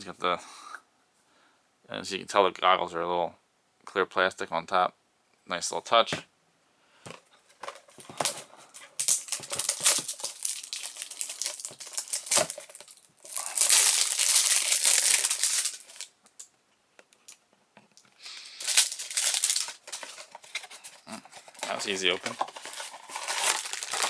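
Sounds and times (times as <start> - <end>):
packaging crinkling and tearing: 7.6 - 16.2, 18.2 - 24.0.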